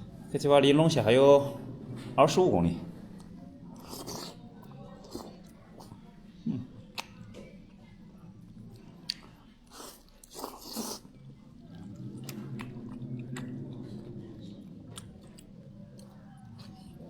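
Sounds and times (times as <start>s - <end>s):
low background hum: 0.0s - 17.0s
person chewing: 3.1s - 6.0s, 6.9s - 7.6s, 8.6s - 17.0s
person slurping noodles: 3.8s - 5.9s, 9.7s - 11.2s.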